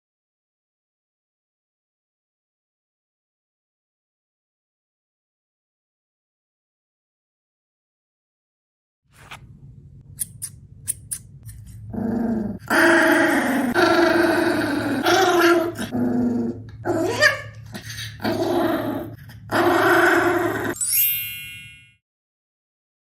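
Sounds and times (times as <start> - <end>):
dog growling: 11.9 - 20.8.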